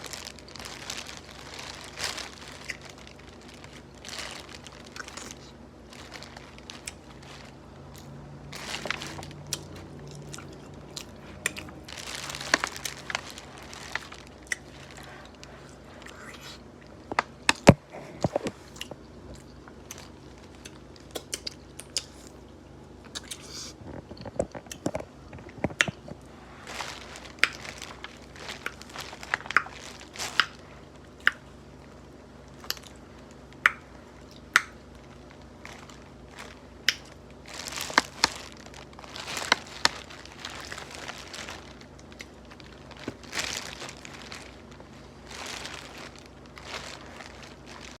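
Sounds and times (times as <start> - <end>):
crinkling: 0.0 - 48.0
chewing: 0.6 - 22.4, 23.1 - 31.5.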